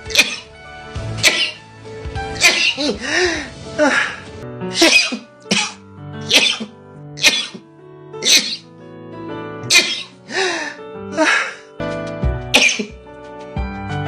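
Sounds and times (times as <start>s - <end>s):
person sneezing: 0.0s - 0.5s, 1.2s - 1.6s, 2.4s - 7.6s, 8.2s - 8.7s, 9.7s - 11.7s, 12.6s - 13.0s
background music: 0.0s - 14.0s.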